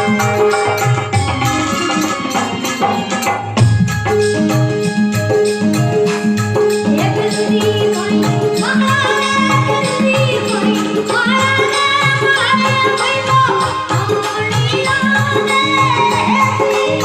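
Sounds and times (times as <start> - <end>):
devotional song accompaniment: 0.0 - 17.0
rattling percussion: 0.0 - 17.0
repeating drum beat: 0.0 - 17.0
child singing: 6.9 - 17.0.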